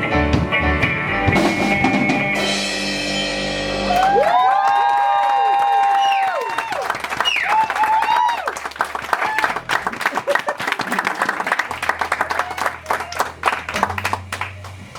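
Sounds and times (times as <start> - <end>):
high whoops: 3.8 - 9.6, 12.2 - 13.3
audience applauding and cheering: 3.8 - 14.9.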